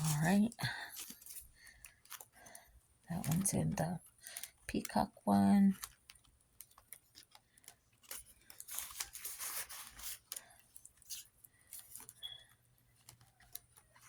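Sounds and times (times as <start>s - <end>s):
paper money rustling: 0.0s - 14.0s
small clicks: 5.7s - 14.0s.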